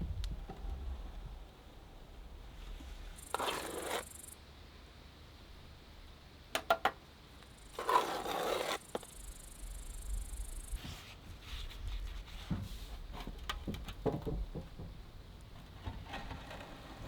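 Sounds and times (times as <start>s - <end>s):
trowel scraping mortar: 3.2s - 4.2s, 7.6s - 9.2s.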